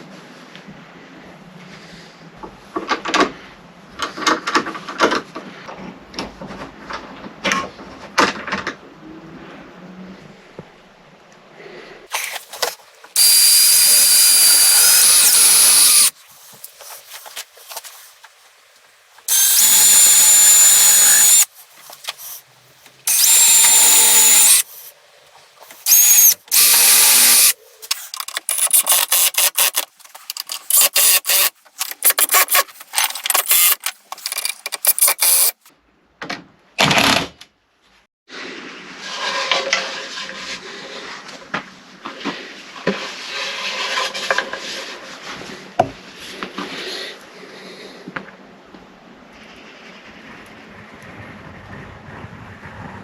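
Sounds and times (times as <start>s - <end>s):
power drill driving screws: 12.1s - 12.4s, 13.2s - 16.1s, 19.3s - 21.5s, 23.1s - 24.7s, 25.8s - 29.9s, 30.6s - 35.7s.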